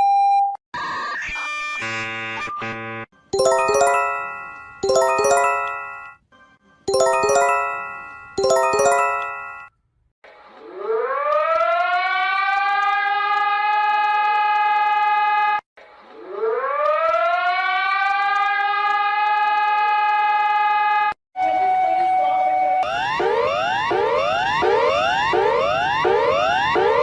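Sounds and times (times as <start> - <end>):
short chime: 3.4 - 6.2, 6.9 - 9.7.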